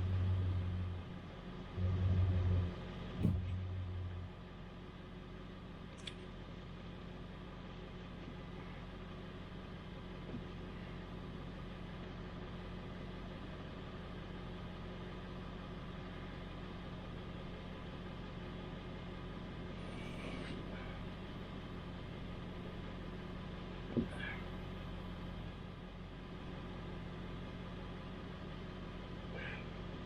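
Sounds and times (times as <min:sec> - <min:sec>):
mechanical hum: 0:00.0 - 0:07.0.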